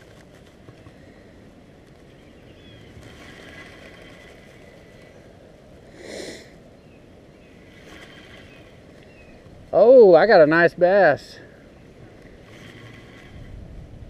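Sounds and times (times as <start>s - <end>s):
wind: 0.0s - 14.0s
breath-like rush: 3.1s - 6.6s.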